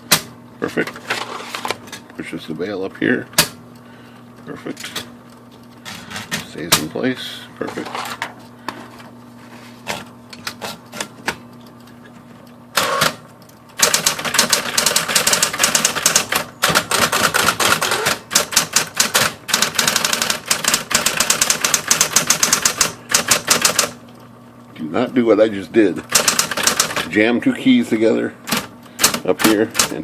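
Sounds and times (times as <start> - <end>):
typewriter motor hum: 0.0 - 8.7, 9.6 - 24.3, 25.0 - 30.0
typewriter keystrokes: 13.8 - 24.0, 26.1 - 27.1, 28.5 - 30.0.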